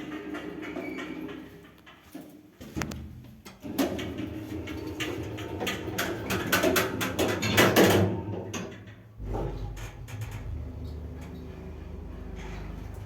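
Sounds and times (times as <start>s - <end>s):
quick clicks and rattling knocks: 5.0s - 10.5s
elevator low hum: 9.2s - 13.0s.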